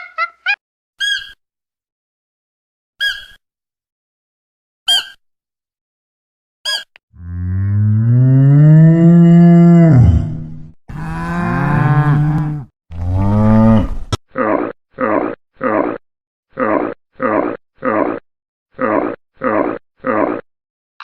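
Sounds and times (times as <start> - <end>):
cow mooing: 7.2 - 14.1.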